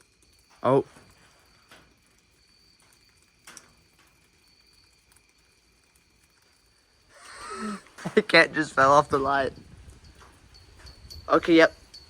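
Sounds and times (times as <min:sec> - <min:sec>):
thin steady high whine: 0:00.0 - 0:12.0.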